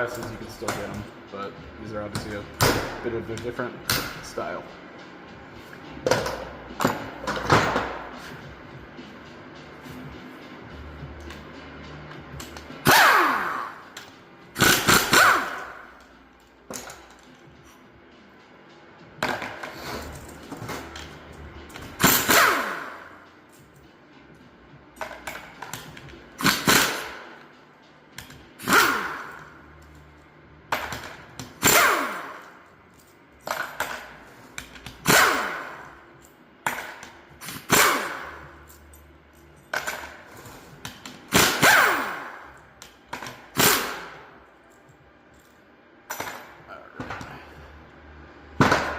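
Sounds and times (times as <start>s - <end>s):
metal parts clinking and ringing: 13.8s - 18.4s, 19.2s - 47.1s.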